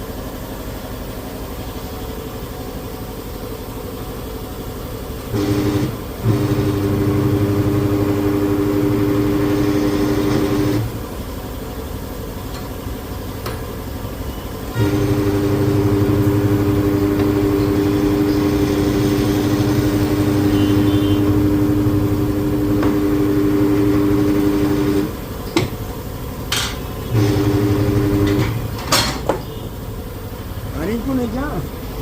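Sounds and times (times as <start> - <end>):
tyre changer machine humming: 0.0 - 32.0.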